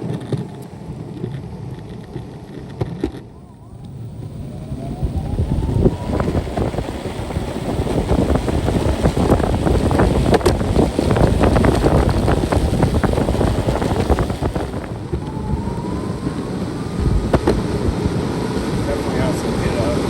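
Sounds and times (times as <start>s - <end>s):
small clicks and crackles: 0.0s - 4.0s, 6.1s - 15.4s
skateboard wheels rumbling: 0.0s - 20.0s
wind buffeting microphone: 0.0s - 20.0s
electric motor whine: 3.2s - 20.0s.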